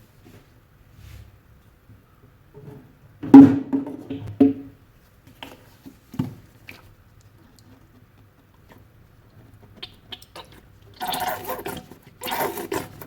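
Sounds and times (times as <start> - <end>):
sponge squelching: 5.7 - 13.0.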